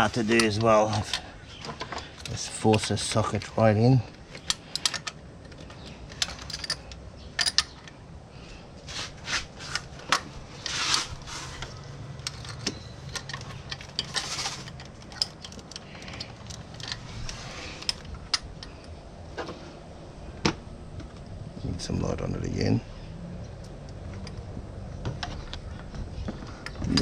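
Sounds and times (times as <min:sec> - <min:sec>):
socket clicking against engine parts: 0:04.1 - 0:08.0, 0:11.6 - 0:19.5
short scraping rustles: 0:08.8 - 0:12.5, 0:14.0 - 0:14.8.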